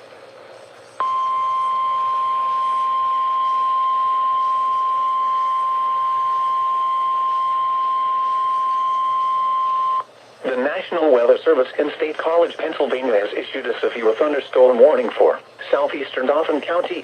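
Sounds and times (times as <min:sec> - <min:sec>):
steady high warning tone: 0:00.8 - 0:16.8.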